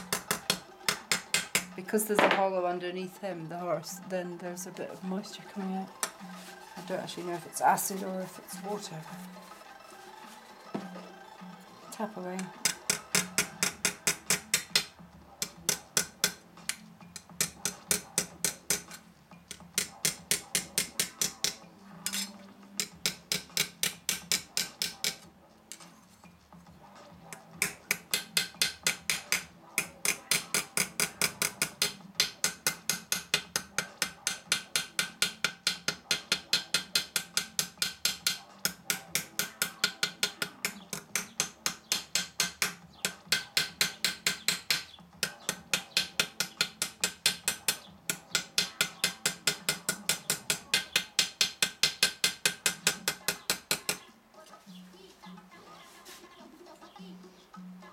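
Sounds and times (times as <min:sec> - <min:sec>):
hammer tapping metal: 0:00.0 - 0:02.5, 0:12.4 - 0:25.9, 0:27.3 - 0:54.1.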